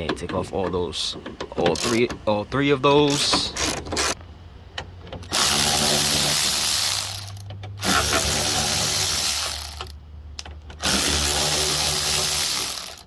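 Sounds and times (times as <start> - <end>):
power driver motor running: 5.2 - 9.9, 10.8 - 13.0.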